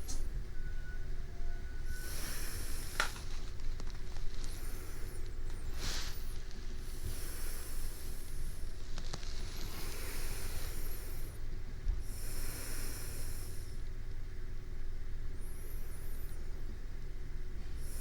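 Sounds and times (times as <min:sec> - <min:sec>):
low background hum: 0:00.0 - 0:18.0
soft sleeping breaths: 0:00.0 - 0:18.0.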